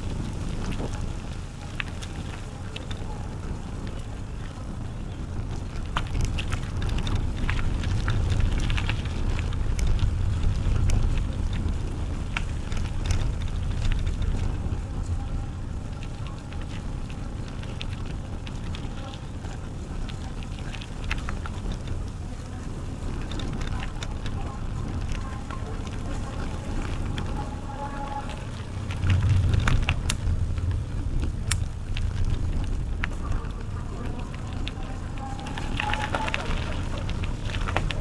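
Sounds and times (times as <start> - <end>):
bicycle tyres rolling on path: 0.0 - 38.0
bike clicks and rattles: 0.0 - 38.0
wind on microphone: 0.0 - 38.0.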